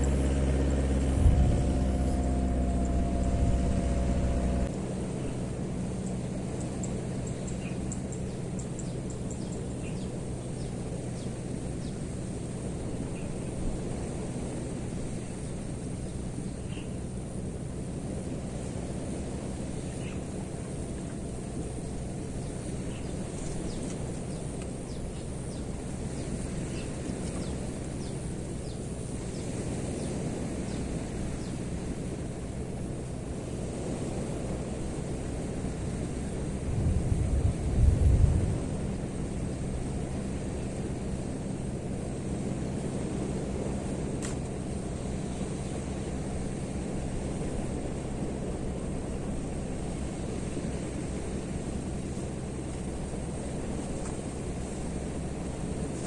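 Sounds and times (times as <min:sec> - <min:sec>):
birds chirping: 0:00.0 - 0:36.6
low rumble of background noise: 0:00.0 - 0:56.0.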